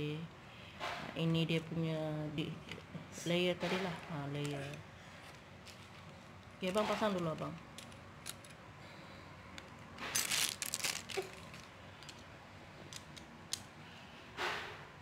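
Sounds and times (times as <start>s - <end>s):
plastic toy parts clicking: 7.6s - 8.6s
plastic packaging crinkling: 9.6s - 12.2s.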